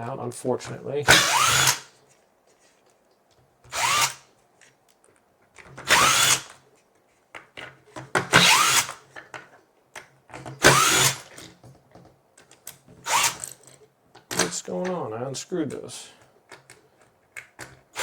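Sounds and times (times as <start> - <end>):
cordless drill bursts: 1.1 - 1.9, 3.7 - 4.2, 5.8 - 6.5, 8.3 - 9.0, 10.6 - 11.2, 13.0 - 13.4.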